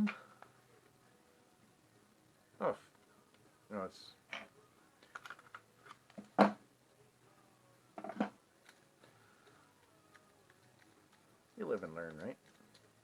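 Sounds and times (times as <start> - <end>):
small hard parts clicking: 4.3 - 6.5, 8.0 - 13.0.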